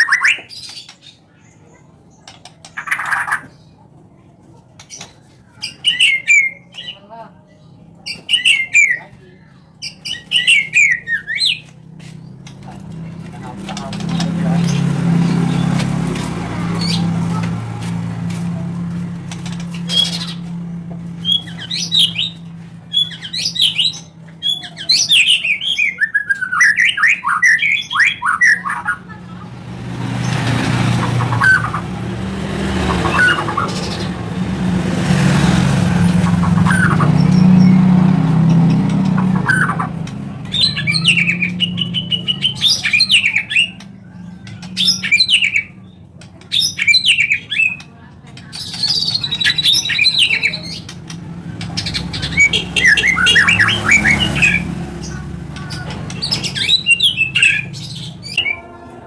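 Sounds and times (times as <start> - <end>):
bird singing whistled phrases: 21.2 - 29.0, 40.5 - 43.8.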